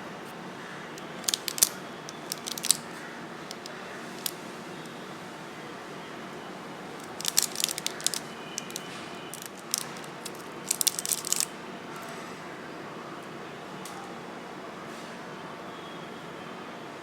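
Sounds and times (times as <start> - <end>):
packaging crinkling and clicking: 1.0 - 4.4, 7.0 - 11.5.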